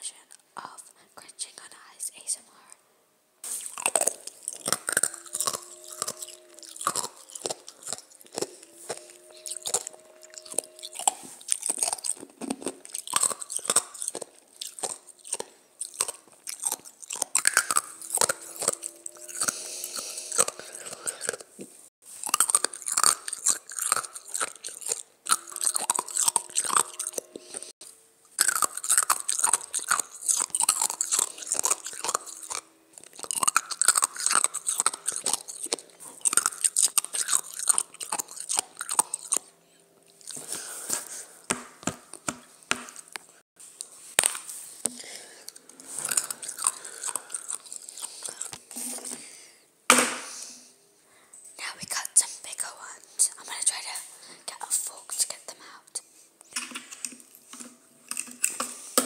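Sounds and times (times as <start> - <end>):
person chewing ice: 3.5 - 39.5, 40.1 - 41.2, 42.9 - 49.2, 57.0 - 58.9.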